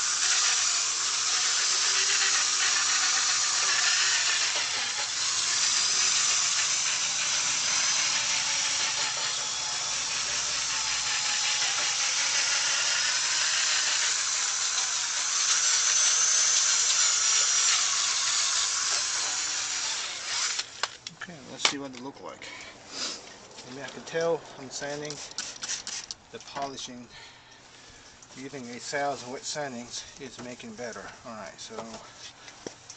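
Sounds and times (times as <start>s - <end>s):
drill sanding plastic: 0.0s - 20.8s, 25.0s - 26.2s.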